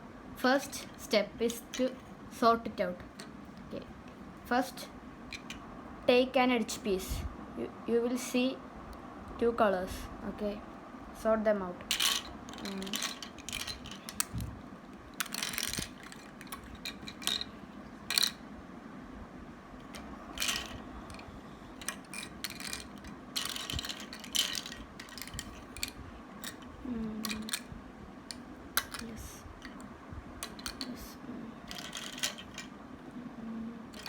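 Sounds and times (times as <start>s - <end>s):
plastic pieces clicking and clattering: 11.9s - 14.5s, 15.2s - 18.4s, 19.9s - 27.7s, 28.3s - 29.8s, 30.4s - 31.0s, 31.6s - 32.7s.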